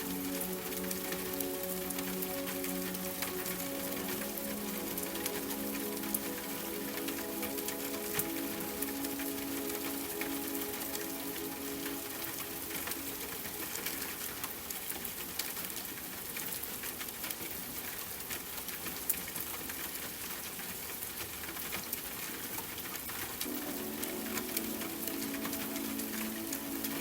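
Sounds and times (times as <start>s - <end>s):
soft sustained music tones: 0.0s - 14.9s, 23.4s - 27.0s
rain drops ticking: 0.0s - 27.0s
steady rain falling: 0.0s - 27.0s.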